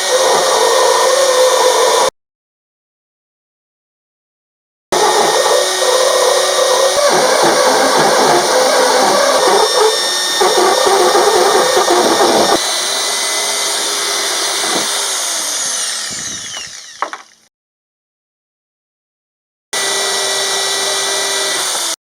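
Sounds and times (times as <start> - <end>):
electric drill grinding metal: 0.0 - 2.1, 5.0 - 17.5, 19.8 - 22.0.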